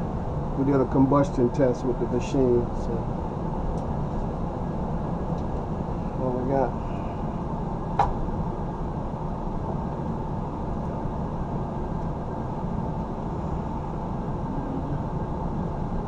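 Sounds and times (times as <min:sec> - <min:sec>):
gas furnace running: 0:00.0 - 0:16.0.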